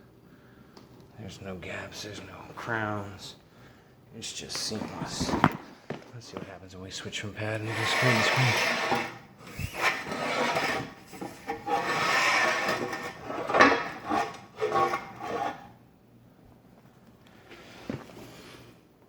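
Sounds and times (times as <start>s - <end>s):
straight edge scraping mortar: 7.5s - 15.7s.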